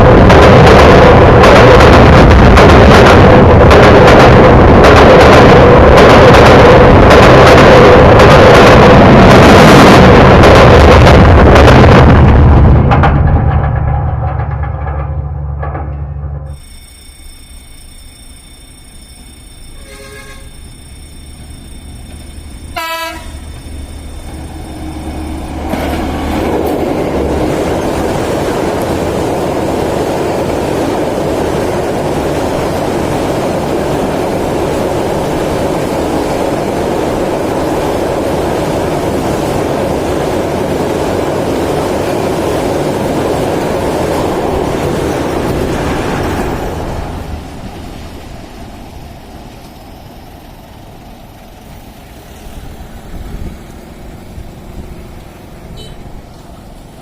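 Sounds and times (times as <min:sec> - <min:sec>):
train wheels rattling on rail: 0:00.0 - 0:57.0
train horn blasts: 0:19.8 - 0:20.5, 0:22.7 - 0:23.4, 0:55.6 - 0:56.2.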